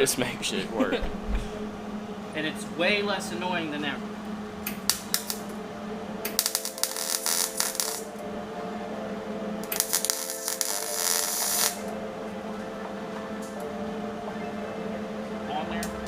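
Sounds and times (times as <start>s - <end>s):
welding arc crackling: 4.6s - 5.6s, 6.2s - 8.2s, 9.6s - 11.9s.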